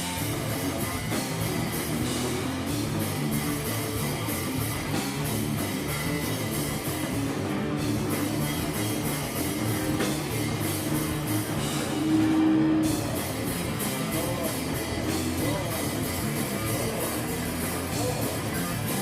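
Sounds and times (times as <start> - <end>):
rock band playing live: 0.0 - 19.0
held electric guitar note: 9.6 - 16.6.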